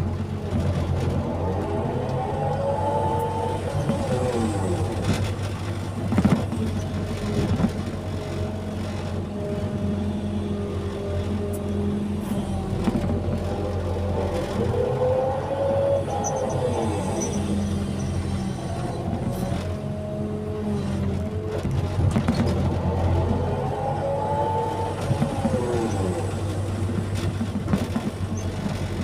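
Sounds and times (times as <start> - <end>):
diesel engine under load: 0.0 - 29.0
hydraulic whine: 9.0 - 28.8.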